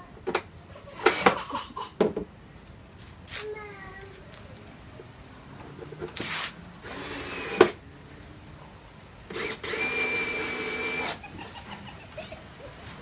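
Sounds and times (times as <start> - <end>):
drill click: 1.0 - 1.4, 6.8 - 7.8, 9.3 - 11.2
power drill whining: 1.0 - 1.4, 6.8 - 7.8, 9.3 - 11.2.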